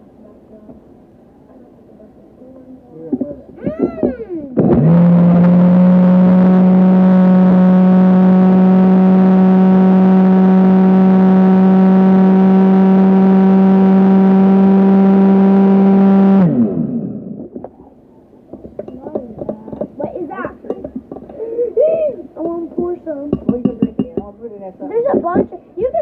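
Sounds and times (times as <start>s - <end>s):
blender motor running: 4.6s - 17.5s.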